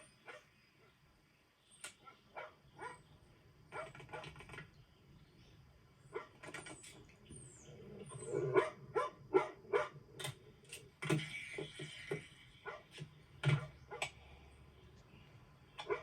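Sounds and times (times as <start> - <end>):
dog barking and yipping: 0.2 - 0.5, 2.0 - 3.0, 8.4 - 10.0, 12.6 - 12.9, 15.8 - 16.0.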